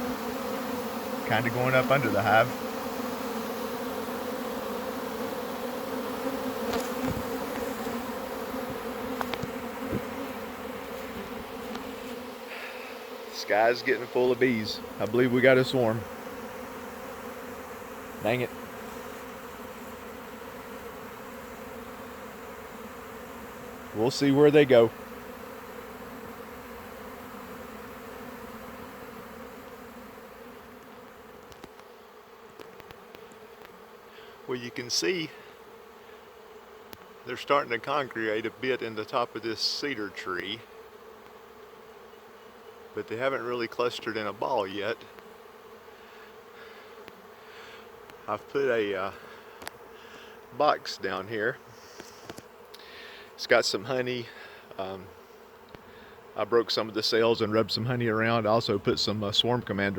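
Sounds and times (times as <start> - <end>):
bees buzzing: 0.0 - 59.9
faint ticks: 9.2 - 9.6, 49.5 - 50.2, 51.9 - 52.9.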